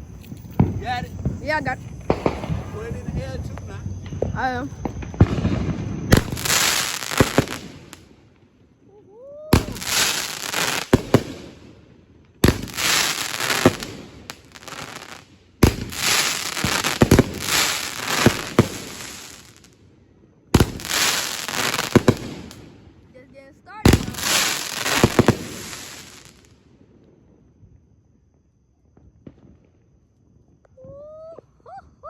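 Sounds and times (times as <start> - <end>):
fireworks bangs: 0.0 - 8.4, 9.5 - 19.8, 20.5 - 22.9, 23.8 - 26.5
fireworks crackling: 0.0 - 8.6, 9.5 - 19.8, 20.5 - 26.6.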